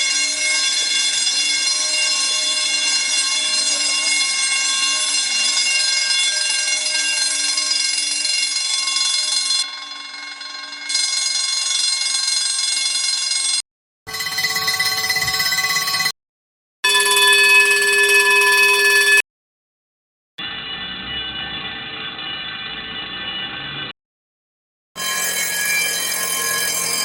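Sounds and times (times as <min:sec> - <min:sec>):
alarm bell ringing: 0:00.0 - 0:16.2, 0:16.8 - 0:19.2, 0:25.0 - 0:27.0.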